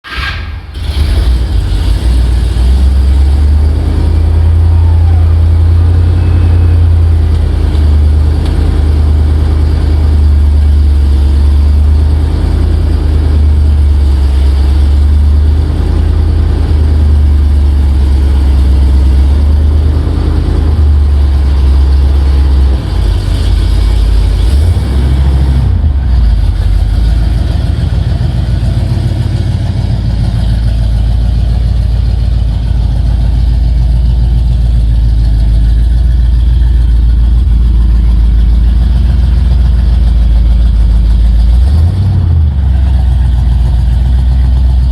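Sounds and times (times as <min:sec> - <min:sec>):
car engine rumble: 0:00.0 - 0:44.9
road noise: 0:00.0 - 0:44.9.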